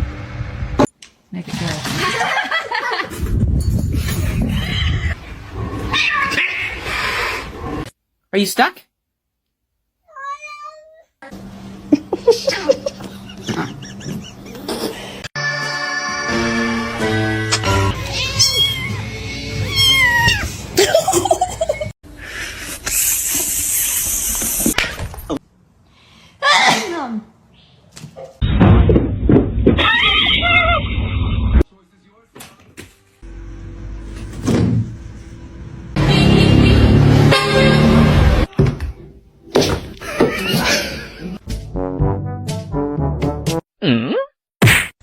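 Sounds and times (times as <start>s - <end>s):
cat yowling: 5.9s - 6.9s, 10.1s - 11.1s, 18.0s - 20.5s.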